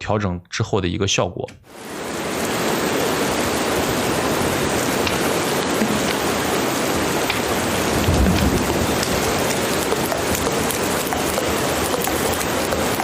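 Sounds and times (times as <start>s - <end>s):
heavy rain hiss: 1.7s - 13.0s
rain drop ticks: 5.0s - 6.5s, 7.2s - 13.0s.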